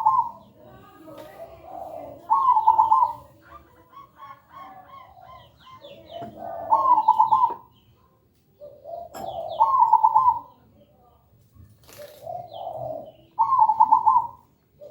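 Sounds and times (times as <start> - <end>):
dove cooing: 0.0 - 7.7, 8.6 - 10.5, 11.8 - 14.9
small birds chirping: 0.0 - 14.9.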